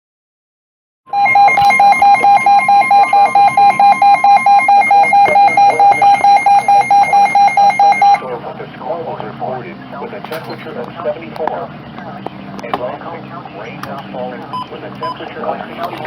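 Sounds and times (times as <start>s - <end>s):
alert alarm beeping rapidly: 1.1s - 8.2s
faint steady tone: 1.1s - 8.2s.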